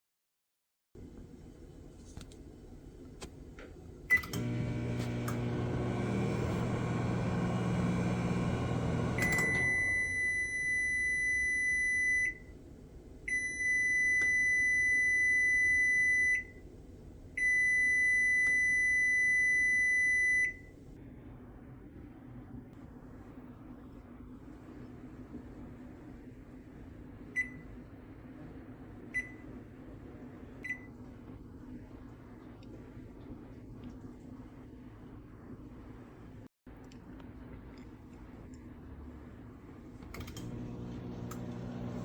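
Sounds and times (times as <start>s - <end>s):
microwave humming: 2.5s - 20.9s, 40.0s - 42.0s.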